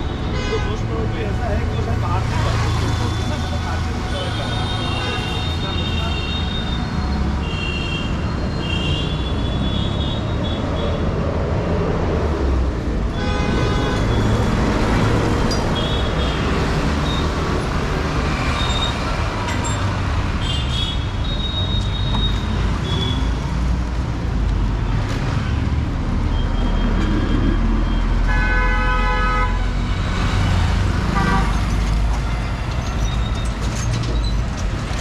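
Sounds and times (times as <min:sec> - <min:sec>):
traffic engines rumbling: 0:00.0 - 0:35.0
car horn honking: 0:28.3 - 0:29.7.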